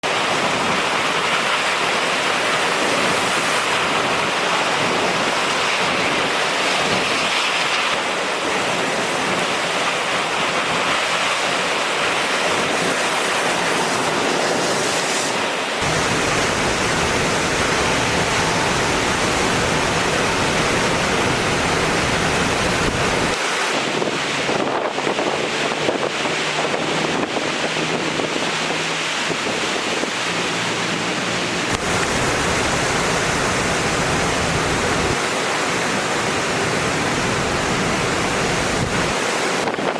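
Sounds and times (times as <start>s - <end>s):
storm wind and water rushing: 0.0s - 39.9s
wind buffeting microphone: 15.8s - 30.4s.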